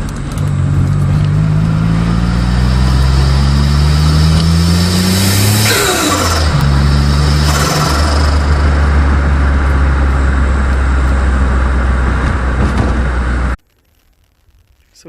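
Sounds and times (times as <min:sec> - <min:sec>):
car engine accelerating: 0:00.0 - 0:13.6
wind and road noise: 0:00.0 - 0:13.6.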